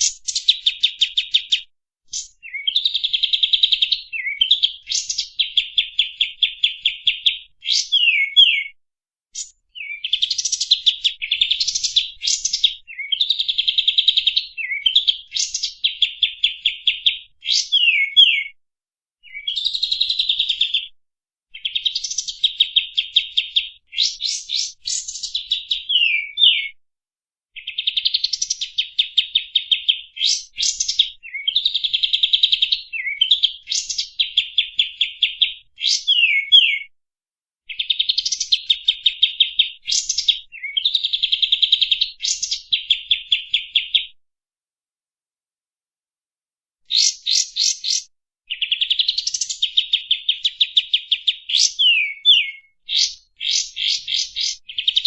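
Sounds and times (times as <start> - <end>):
songbird trilling: 0.0 - 8.7, 9.4 - 18.5, 23.1 - 26.7, 32.6 - 36.9, 37.7 - 41.2, 46.9 - 50.7, 51.3 - 55.0.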